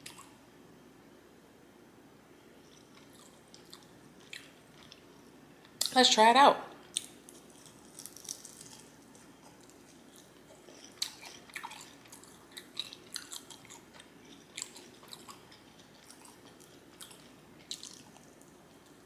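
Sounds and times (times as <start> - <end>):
person chewing chicken wing: 2.7 - 5.0, 6.9 - 19.0.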